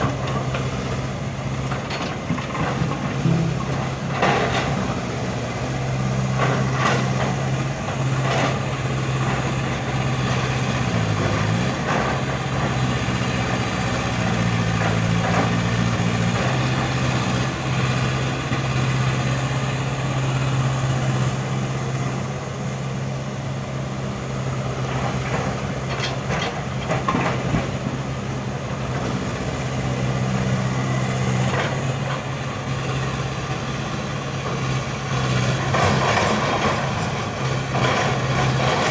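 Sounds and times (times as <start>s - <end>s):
excavator diesel engine running: 0.0s - 38.9s
machine knocks and clanks: 1.7s - 5.0s, 25.1s - 27.9s.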